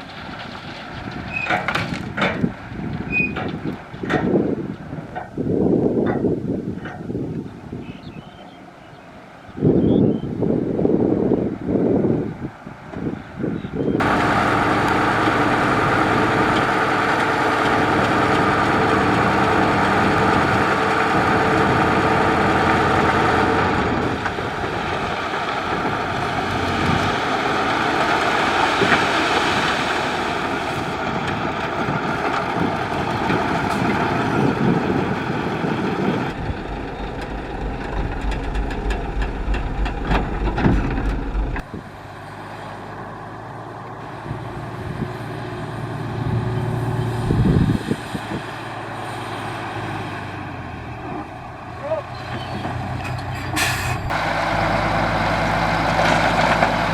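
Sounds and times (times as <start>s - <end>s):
heavy diesel engine running: 14.0s - 56.9s
deep low rumble: 32.5s - 41.9s.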